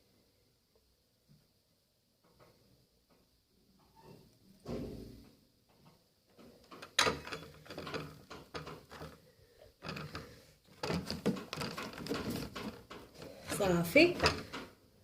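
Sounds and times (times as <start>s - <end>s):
bottles clicking and knocking: 6.7s - 9.2s, 9.8s - 14.7s.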